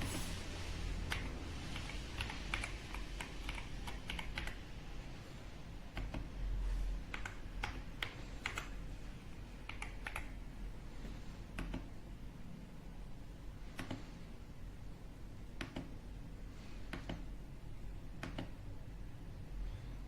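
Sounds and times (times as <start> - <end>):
mechanical keyboard typing: 1.1 - 4.7, 7.0 - 8.8, 9.6 - 10.4.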